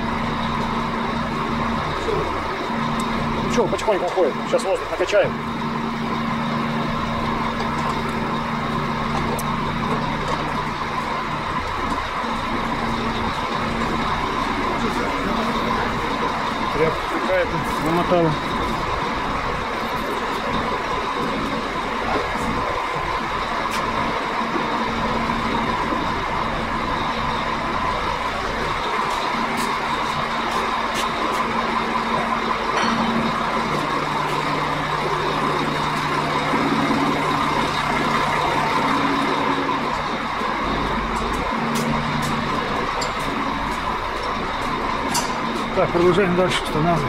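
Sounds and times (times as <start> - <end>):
air compressor pumping: 0.0 - 47.0
diesel truck engine idling: 0.0 - 47.0.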